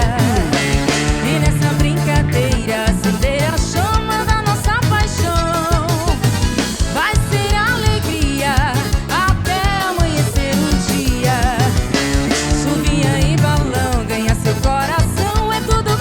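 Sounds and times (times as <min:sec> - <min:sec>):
drum kit beat: 0:00.0 - 0:16.0
upbeat latin band music: 0:00.0 - 0:16.0
wavering lead melody: 0:00.0 - 0:16.0.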